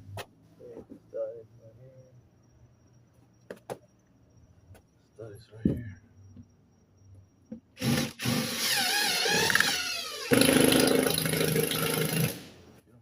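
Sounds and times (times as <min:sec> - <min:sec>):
cordless drill driving screw: 0:07.8 - 0:12.5.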